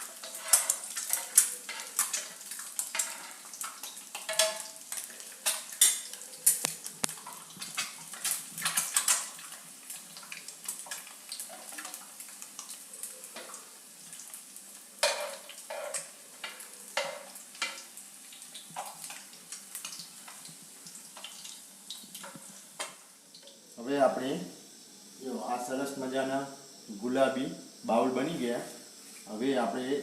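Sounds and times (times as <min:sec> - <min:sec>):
egg frying in oil sizzle: 0:00.0 - 0:26.9
metal spatula scraping pan: 0:00.1 - 0:02.3.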